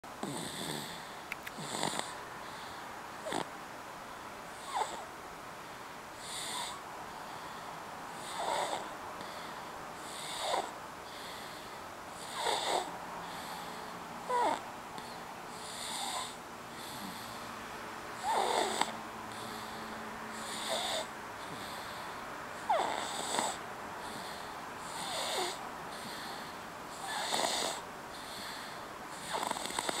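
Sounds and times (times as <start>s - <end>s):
baby snoring: 0.2s - 3.5s, 4.6s - 5.1s, 6.2s - 6.8s, 7.5s - 8.9s, 10.0s - 17.4s, 18.2s - 30.0s.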